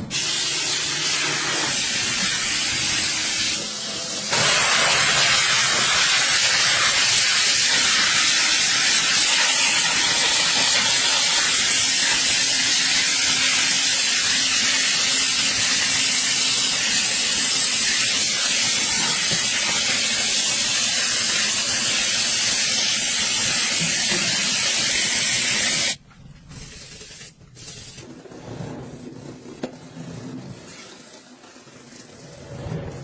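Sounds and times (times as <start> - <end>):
high-pressure water spray hissing: 0.1 - 26.0
rubbing and handling noises: 25.9 - 33.0.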